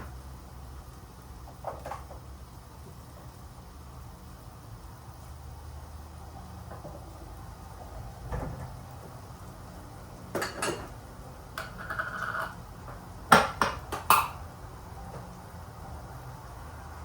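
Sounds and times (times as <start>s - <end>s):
dishes and utensils clattering: 10.3s - 10.9s, 11.6s - 12.6s.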